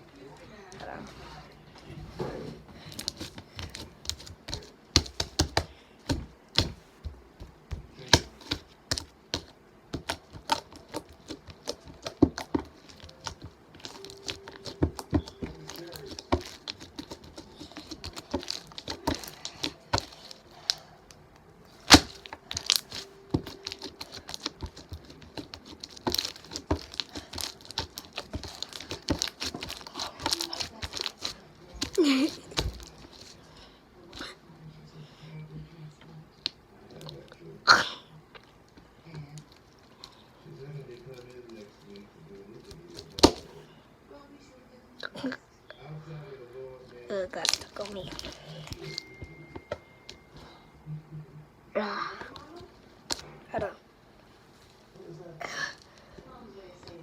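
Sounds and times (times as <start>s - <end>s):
slime clicking and crackling: 2.9s - 6.8s, 7.4s - 21.2s, 21.9s - 33.4s, 42.6s - 43.5s, 47.3s - 49.2s.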